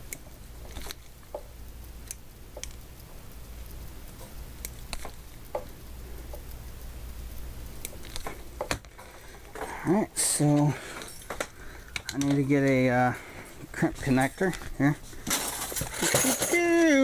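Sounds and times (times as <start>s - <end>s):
low steady hum: 0.0s - 17.0s
hand tools clicking and tapping: 4.2s - 6.5s, 10.5s - 12.8s, 14.4s - 17.0s.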